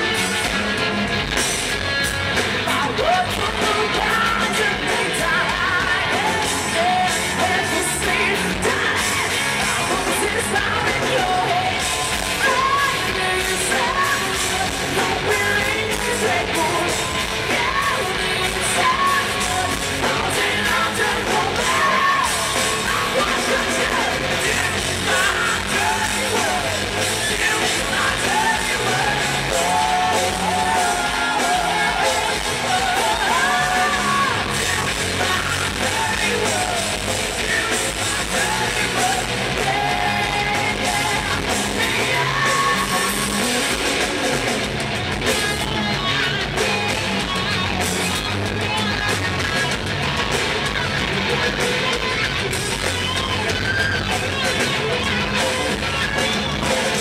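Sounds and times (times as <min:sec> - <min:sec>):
live hard rock band: 0:00.0 - 0:57.0
person singing: 0:02.5 - 0:44.6.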